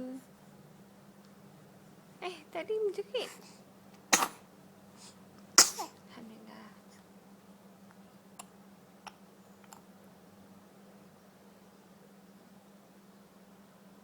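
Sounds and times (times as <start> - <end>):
sharp sneeze: 4.1 - 4.4, 5.6 - 6.0
faint clicks: 9.1 - 9.9.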